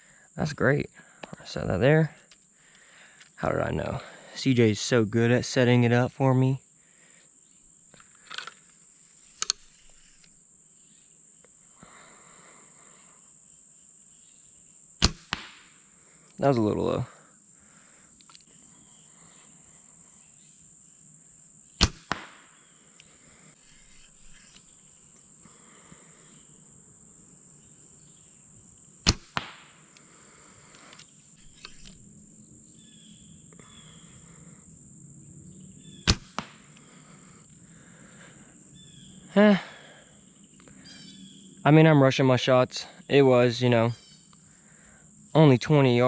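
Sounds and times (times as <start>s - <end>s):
bow string snap: 15.0s - 15.7s, 21.8s - 22.6s, 23.6s - 24.7s, 29.1s - 29.8s, 36.1s - 36.9s
arrow striking target bag: 15.0s - 15.8s, 21.8s - 22.6s, 23.6s - 24.6s, 29.0s - 29.8s, 36.1s - 36.6s.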